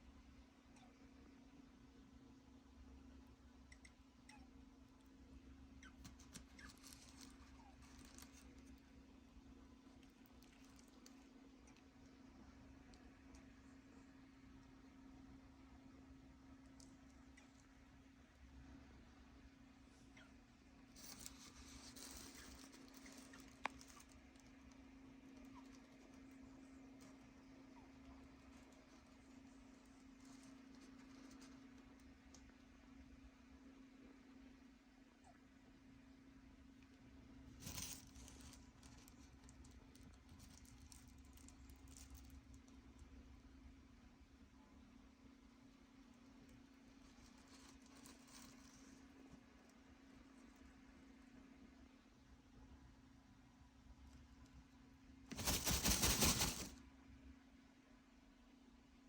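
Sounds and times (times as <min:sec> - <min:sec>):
faint steady hum: 0:00.0 - 0:59.0
plastic trash bag crinkling: 0:06.2 - 0:08.8, 0:21.0 - 0:24.4, 0:37.6 - 0:39.3, 0:55.3 - 0:56.8.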